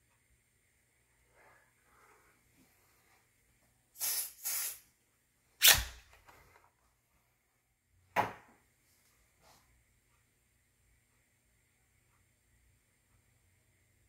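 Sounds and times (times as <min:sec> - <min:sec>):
aerosol spray hissing: 0:04.0 - 0:04.9.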